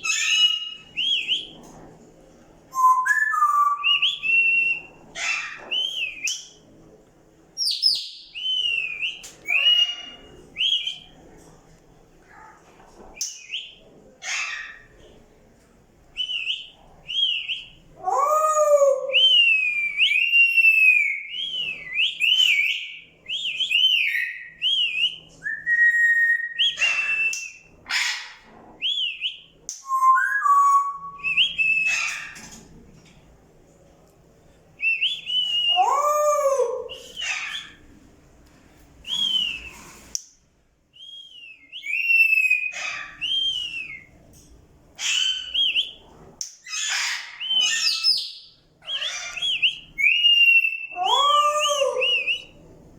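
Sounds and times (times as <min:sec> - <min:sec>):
parrots whistling: 0:00.0 - 0:01.6, 0:02.8 - 0:06.5, 0:07.7 - 0:11.1, 0:16.2 - 0:32.4, 0:34.8 - 0:37.8, 0:39.0 - 0:40.0, 0:41.0 - 0:44.1, 0:45.0 - 0:46.0, 0:46.6 - 0:52.6
harsh parrot calls: 0:30.0 - 0:32.5, 0:41.8 - 0:43.6, 0:45.0 - 0:46.0, 0:46.6 - 0:52.6.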